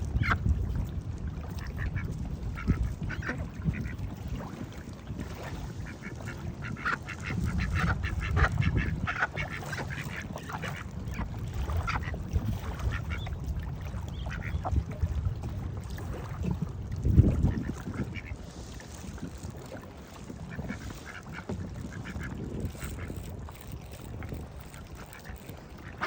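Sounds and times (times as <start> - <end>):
ducks quacking: 5.9 - 10.8, 20.6 - 22.4.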